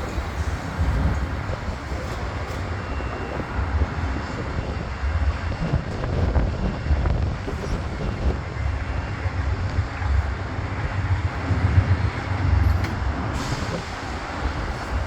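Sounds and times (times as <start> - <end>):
diesel locomotive rumble: 0.0 - 15.0.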